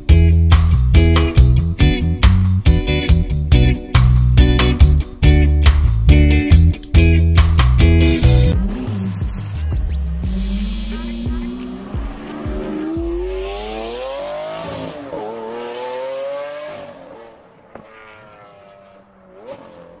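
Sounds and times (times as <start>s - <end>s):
car engine accelerating: 8.0s - 20.0s.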